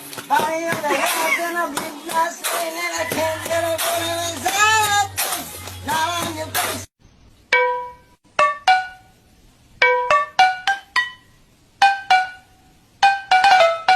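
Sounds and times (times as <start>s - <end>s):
sung music track: 0.4s - 6.9s
plucked-string melody: 7.5s - 9.2s, 9.8s - 13.9s.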